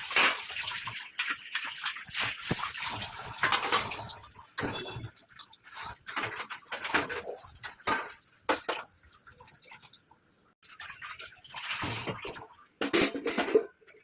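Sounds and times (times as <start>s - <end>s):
water splashing and running: 0.0s - 12.7s.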